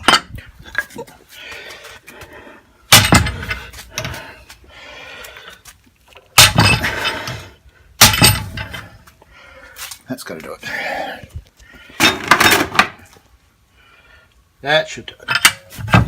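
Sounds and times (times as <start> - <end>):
metal rattle: 0.0 - 1.1, 2.9 - 4.4, 6.2 - 9.1, 12.0 - 13.1, 15.2 - 16.0.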